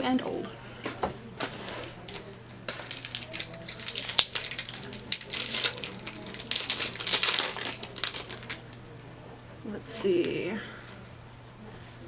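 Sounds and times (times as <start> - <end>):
foil wrapper crinkling and tearing: 1.4 - 9.0.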